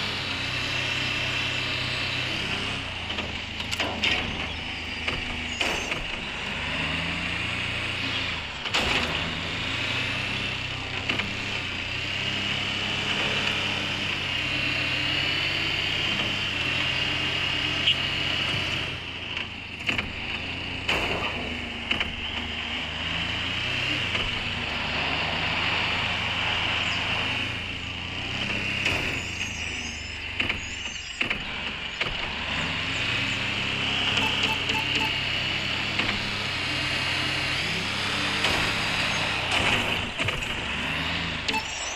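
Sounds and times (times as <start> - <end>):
vehicle engine running: 0.0 - 41.9
sharp knocks and clatters: 18.5 - 22.5.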